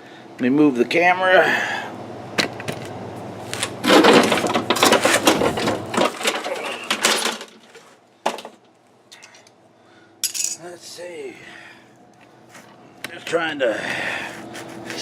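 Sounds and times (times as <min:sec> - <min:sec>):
rattling and rustling: 0:03.6 - 0:08.6.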